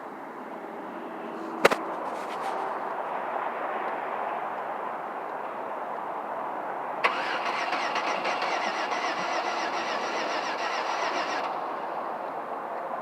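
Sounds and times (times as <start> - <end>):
car starter cranking: 7.0 - 11.4.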